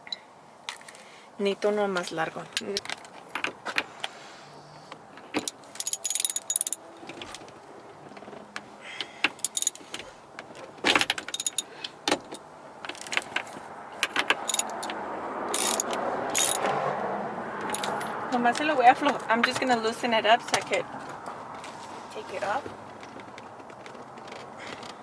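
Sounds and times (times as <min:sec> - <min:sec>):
metal hand tools clinking: 0:05.4 - 0:07.4, 0:09.4 - 0:10.0, 0:11.2 - 0:13.4, 0:14.4 - 0:16.8, 0:17.6 - 0:18.7.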